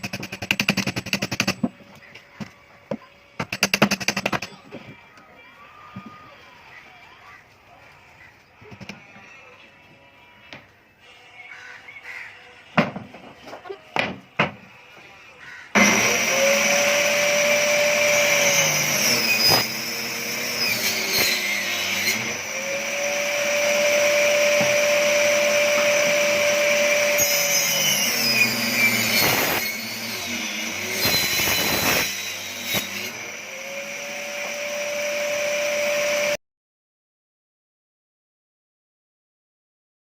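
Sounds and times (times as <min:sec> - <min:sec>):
saw blade cutting wood: 0:00.0 - 0:02.3, 0:15.8 - 0:36.4
grinder saw motor running: 0:15.8 - 0:36.4.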